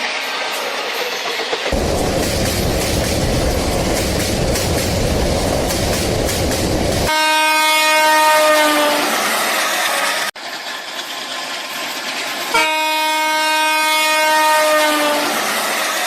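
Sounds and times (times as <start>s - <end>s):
train rumbling: 0.0s - 16.0s
train horn: 7.1s - 10.3s, 12.5s - 16.0s.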